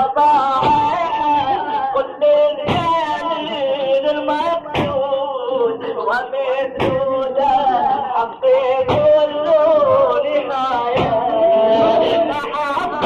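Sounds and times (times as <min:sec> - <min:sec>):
man chanting: 0:00.0 - 0:13.0
sharp beat: 0:00.5 - 0:01.8, 0:02.6 - 0:03.7, 0:04.6 - 0:05.3, 0:06.7 - 0:07.6, 0:08.8 - 0:13.0.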